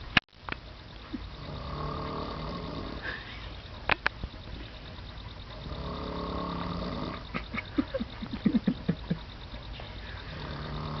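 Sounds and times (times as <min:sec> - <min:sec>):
person snoring: 0:01.4 - 0:03.2, 0:10.4 - 0:11.0.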